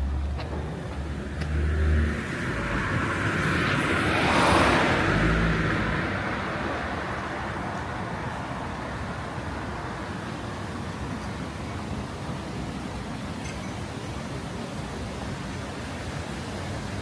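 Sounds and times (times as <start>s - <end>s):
car driving past: 0.5s - 6.7s.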